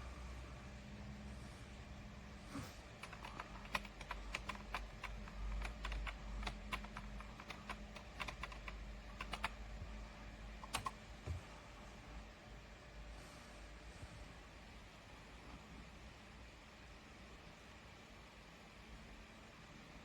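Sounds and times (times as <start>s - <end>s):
low steady hum: 0.0s - 20.0s
keyboard key clicks: 3.0s - 9.6s, 10.6s - 11.0s.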